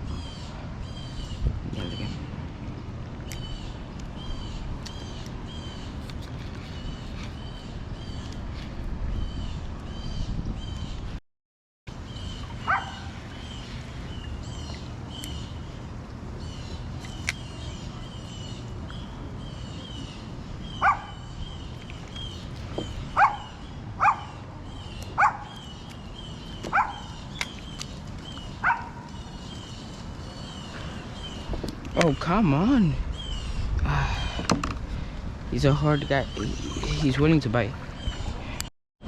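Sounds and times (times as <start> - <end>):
dog barking: 12.6 - 13.1, 20.8 - 21.2, 23.2 - 24.4, 25.2 - 25.5, 26.7 - 27.1, 28.6 - 29.0.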